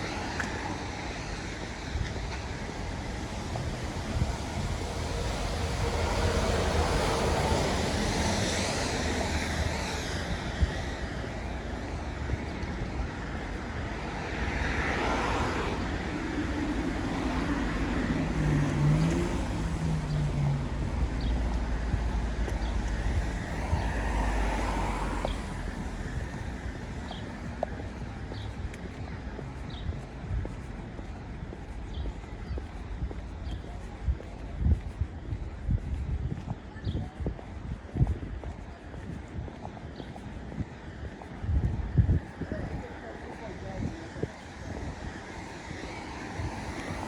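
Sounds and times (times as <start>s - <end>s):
cars passing on wet road: 0.0s - 33.6s, 42.2s - 47.0s.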